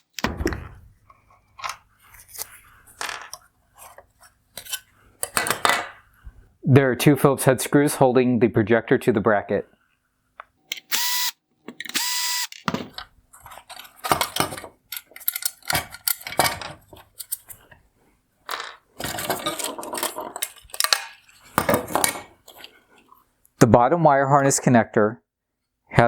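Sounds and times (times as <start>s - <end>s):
cordless screwdriver whirring: 10.7s - 12.6s
plastic and metal parts rattling: 11.7s - 17.5s, 18.5s - 22.6s.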